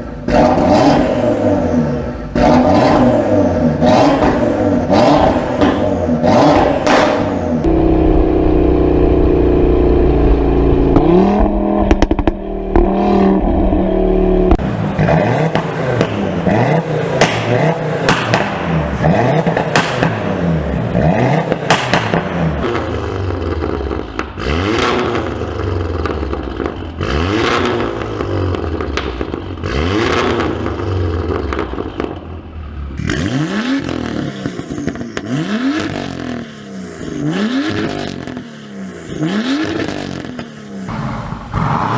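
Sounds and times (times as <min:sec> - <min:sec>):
sports car engine revving: 0:00.0 - 0:41.9
exhaust crackles and pops: 0:06.6 - 0:14.7, 0:17.2 - 0:18.7, 0:21.4 - 0:33.1.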